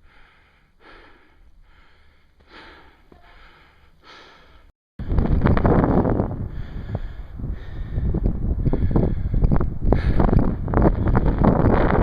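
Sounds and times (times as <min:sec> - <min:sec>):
person breathing hard: 0:00.0 - 0:05.3, 0:06.4 - 0:11.6
wind buffeting microphone: 0:05.0 - 0:12.0.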